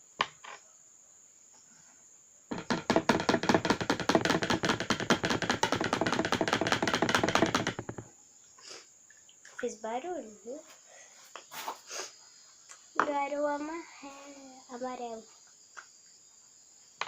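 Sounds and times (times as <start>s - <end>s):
rapid knocking on hard surface: 2.5s - 8.1s.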